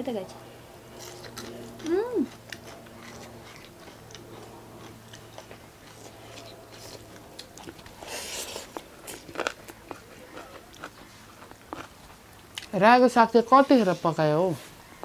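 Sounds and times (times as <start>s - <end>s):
person chewing food: 1.0s - 12.7s.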